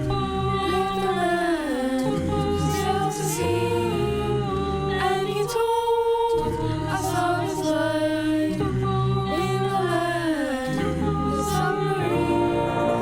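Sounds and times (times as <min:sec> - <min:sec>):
a cappella group singing: 0:00.0 - 0:13.0.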